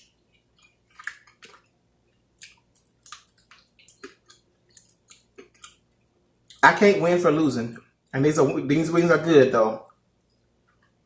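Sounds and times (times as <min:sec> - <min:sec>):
wet chewing and lip smacking: 0:00.0 - 0:06.6.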